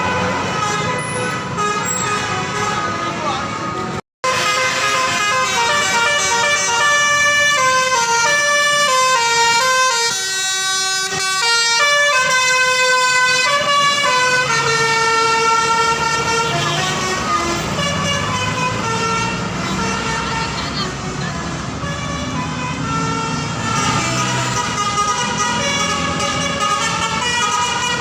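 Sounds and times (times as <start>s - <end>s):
multi-tone air horn tune: 4.2s - 20.6s, 21.8s - 28.0s.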